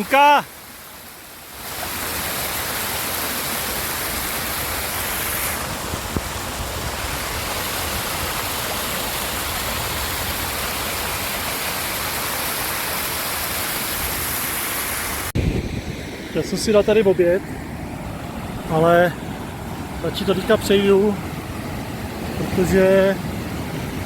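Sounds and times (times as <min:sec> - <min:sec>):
mountain creek rushing: 0:00.0 - 0:24.0.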